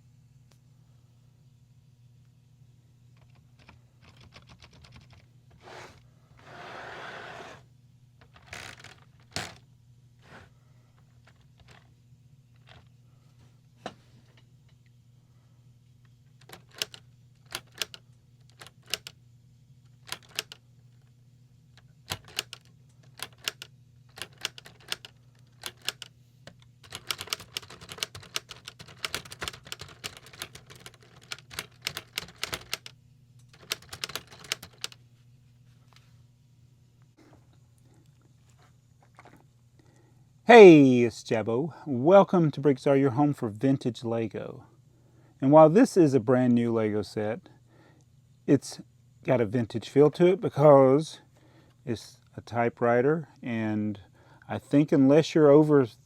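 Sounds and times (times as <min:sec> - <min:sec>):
typewriter keys clacking: 0:03.2 - 0:05.2, 0:16.4 - 0:19.1, 0:20.0 - 0:20.6, 0:22.1 - 0:35.0.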